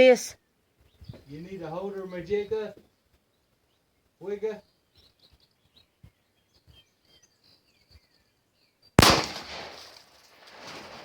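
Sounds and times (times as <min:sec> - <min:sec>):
faint bird chirps: 0:00.4 - 0:09.0
pistol shot: 0:09.0 - 0:11.0.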